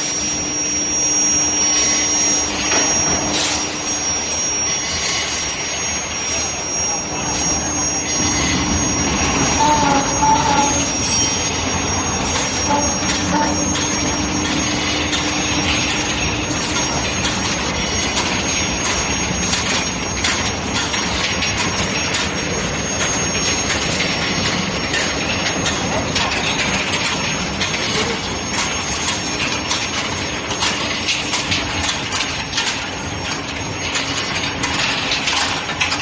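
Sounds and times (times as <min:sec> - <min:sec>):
thin high whine: 0:00.0 - 0:35.0
loud machinery noise: 0:00.0 - 0:36.0
metal parts clanking: 0:09.4 - 0:36.0.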